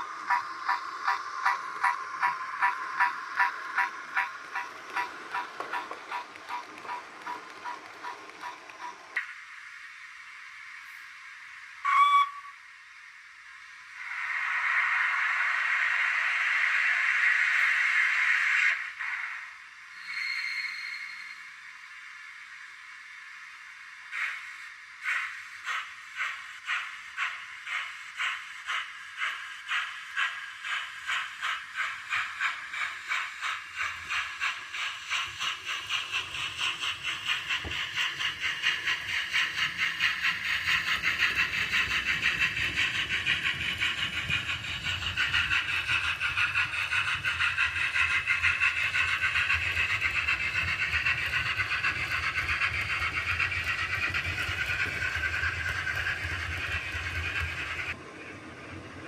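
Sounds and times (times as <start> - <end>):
model steam locomotive chuffing: 0.0 - 12.5, 13.6 - 59.0.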